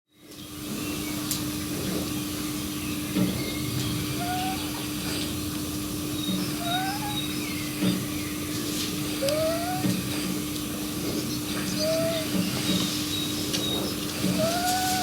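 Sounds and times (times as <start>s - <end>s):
steady hum: 0.6s - 15.0s
small birds chirping: 0.8s - 5.3s, 6.1s - 10.4s, 11.1s - 15.0s.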